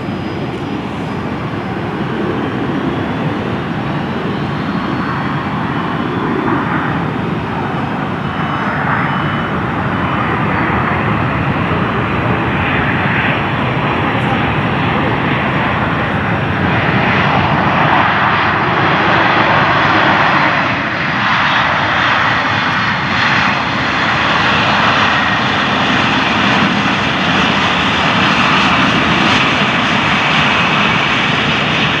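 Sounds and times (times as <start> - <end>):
faint high whine: 0.0 - 18.6
jet engines roaring: 0.0 - 32.0.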